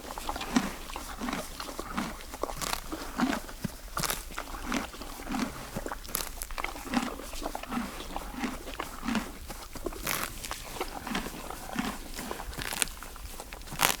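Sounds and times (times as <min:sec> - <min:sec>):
horse chewing grass: 0:00.0 - 0:14.0
grass tearing crunches: 0:01.2 - 0:03.4, 0:04.0 - 0:05.5, 0:06.1 - 0:09.2, 0:10.0 - 0:13.0, 0:13.6 - 0:14.0.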